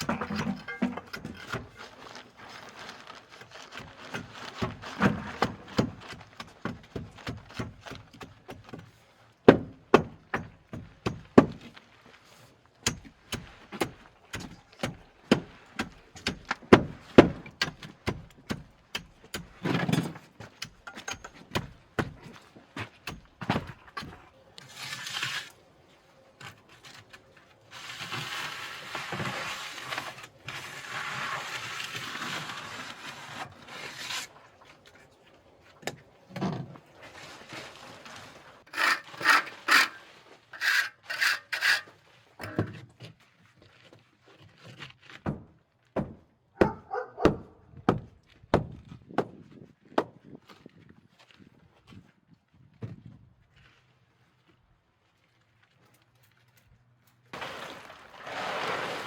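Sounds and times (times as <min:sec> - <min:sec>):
scraping: 0:36.5 - 0:42.7.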